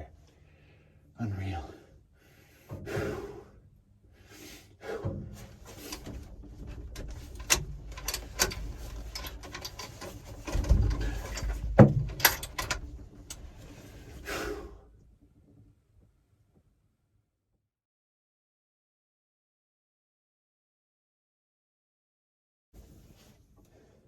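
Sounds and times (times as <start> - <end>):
handling clicks and rustles: 5.3 - 14.2.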